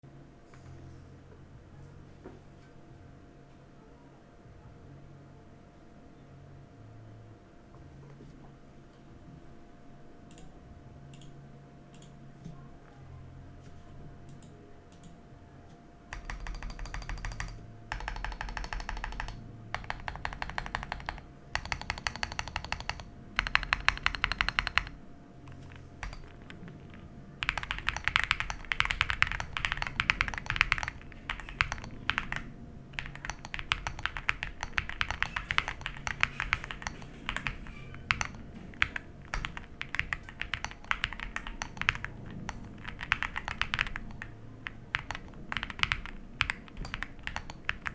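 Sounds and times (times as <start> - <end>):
typing on mechanical keyboard: 16.1 - 47.9.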